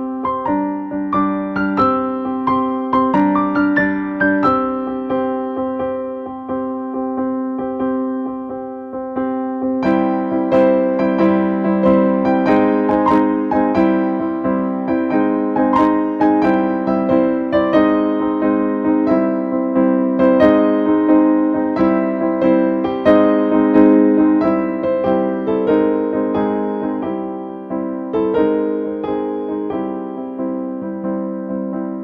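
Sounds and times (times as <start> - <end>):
electric piano music: 0.0 - 32.0.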